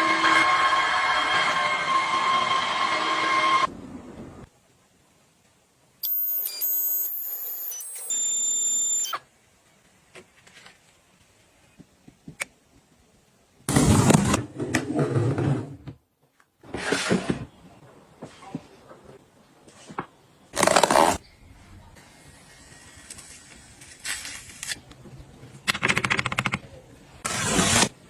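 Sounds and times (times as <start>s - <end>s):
high electronic beeps: 6.0s - 9.2s.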